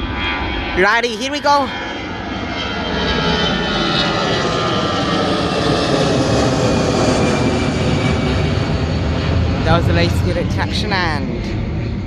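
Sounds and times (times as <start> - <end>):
jet engines roaring: 9.3 - 11.6.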